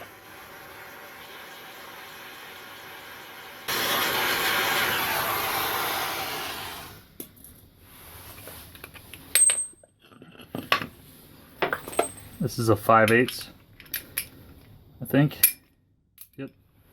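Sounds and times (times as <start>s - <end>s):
metal clinks: 11.6s - 12.4s.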